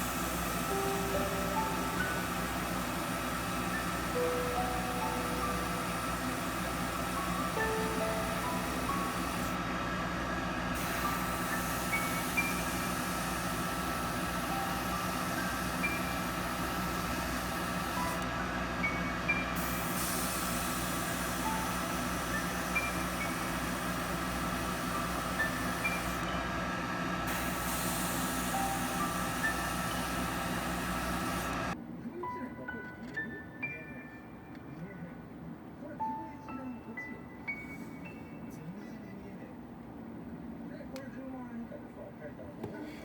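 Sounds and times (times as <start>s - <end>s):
sparse melody with sustained backing: 3.7s - 6.4s.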